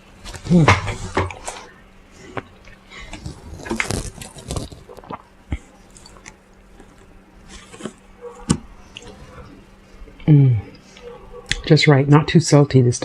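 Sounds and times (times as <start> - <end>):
person chewing and lip smacking: 2.3 - 7.2, 8.4 - 9.2.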